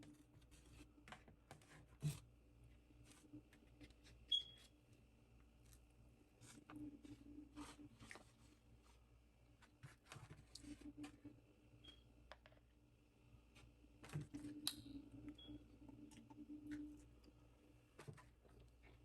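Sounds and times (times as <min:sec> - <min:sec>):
faint steady hum: 0:00.0 - 0:19.0
chewing: 0:15.9 - 0:17.4.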